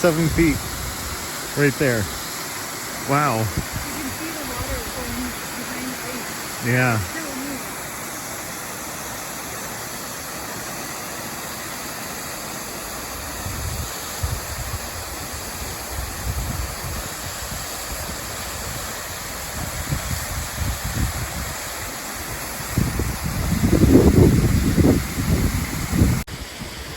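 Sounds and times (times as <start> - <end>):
waterfall rushing: 0.0 - 26.9
wind buffeting microphone: 3.5 - 6.2, 13.3 - 21.7, 22.3 - 26.9.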